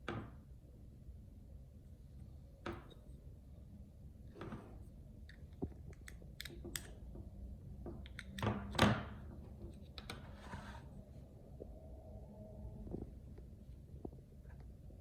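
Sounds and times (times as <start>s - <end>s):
scrape and knock: 9.5s - 11.0s.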